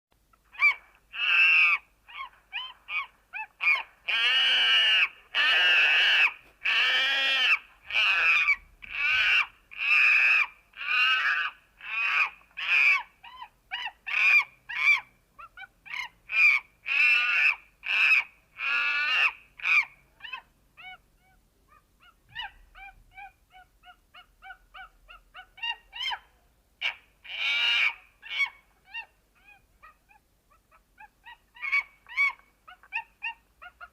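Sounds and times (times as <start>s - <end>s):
monkey calling: 0.5s - 21.4s, 22.0s - 33.9s.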